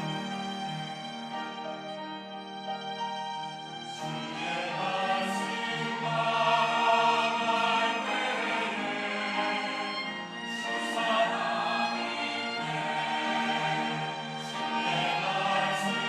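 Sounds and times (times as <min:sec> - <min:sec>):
church choir singing: 0:00.0 - 0:16.0
sustained instrumental notes: 0:00.0 - 0:16.0.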